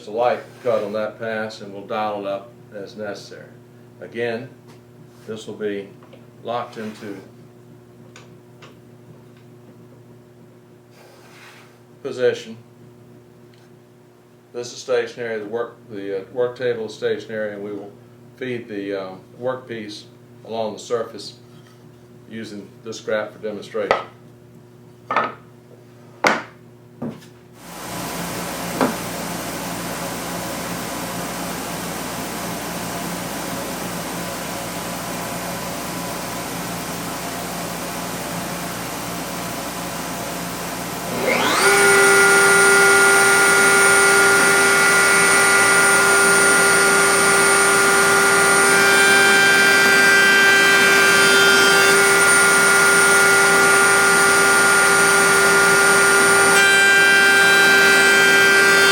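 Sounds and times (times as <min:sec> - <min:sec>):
router motor whine: 0:27.6 - 0:34.1, 0:37.4 - 0:58.9.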